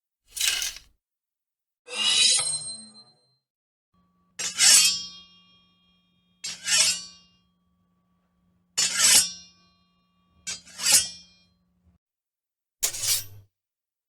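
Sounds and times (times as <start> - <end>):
metal blade scrapes: 0.3 - 0.9, 1.9 - 3.1, 4.4 - 5.6, 6.4 - 7.4, 8.8 - 9.5, 10.5 - 11.3, 12.8 - 13.4.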